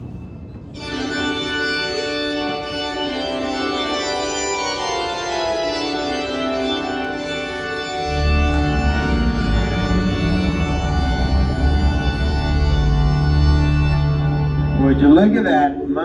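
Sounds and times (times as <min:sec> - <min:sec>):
low rumble: 0:00.0 - 0:01.8, 0:07.6 - 0:16.0
organ chords: 0:00.0 - 0:16.0.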